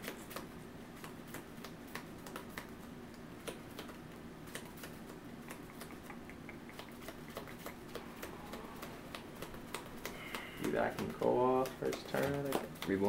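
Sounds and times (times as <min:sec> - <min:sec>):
faint steady hum: 0:00.0 - 0:13.0
cards clicking and tapping on table: 0:03.4 - 0:13.0.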